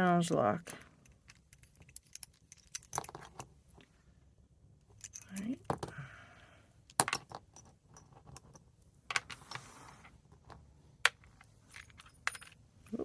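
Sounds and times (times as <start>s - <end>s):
metal clicks and clinks: 5.0s - 6.0s, 11.1s - 13.0s.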